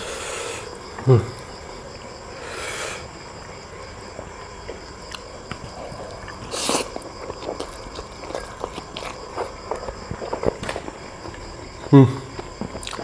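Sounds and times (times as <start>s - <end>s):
wet chewing and sucking: 5.1s - 13.0s
slurp: 5.7s - 10.8s.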